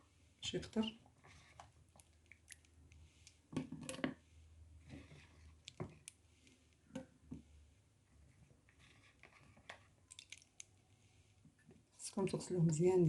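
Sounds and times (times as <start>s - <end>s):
wet figs squelching and clicking: 1.8s - 3.4s, 5.5s - 6.8s, 10.0s - 10.8s
dripping water: 10.1s - 10.7s.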